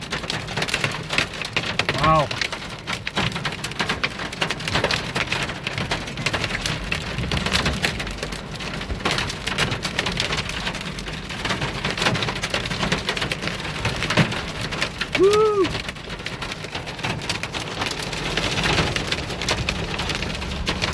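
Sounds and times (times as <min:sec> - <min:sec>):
rain and hail on vehicle roof: 0:00.0 - 0:20.9.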